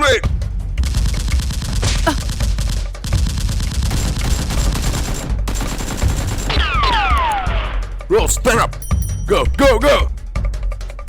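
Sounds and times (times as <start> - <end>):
automatic gunfire: 0.8 - 7.2.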